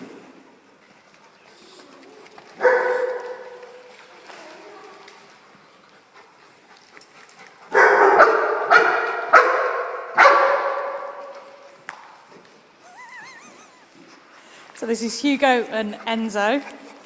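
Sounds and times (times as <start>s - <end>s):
big dog barking: 2.6s - 3.8s, 7.7s - 11.3s.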